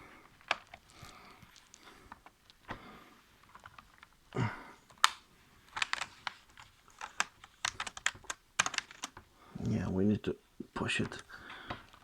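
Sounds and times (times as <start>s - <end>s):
keyboard keys clicking: 7.1s - 9.2s.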